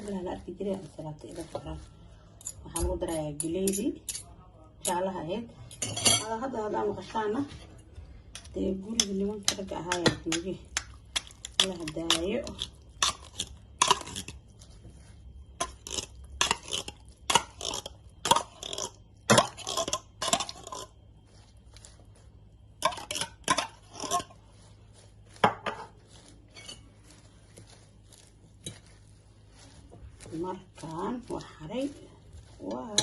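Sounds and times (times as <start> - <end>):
utensils clattering in a bowl: 5.7 - 6.4, 22.8 - 24.4, 25.3 - 27.2.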